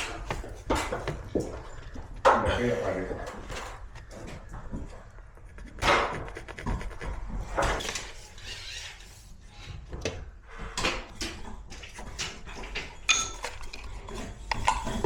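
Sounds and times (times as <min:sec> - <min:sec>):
knocks and rustles of handwork: 0:00.0 - 0:08.3
brief scraping burst: 0:05.3 - 0:08.9.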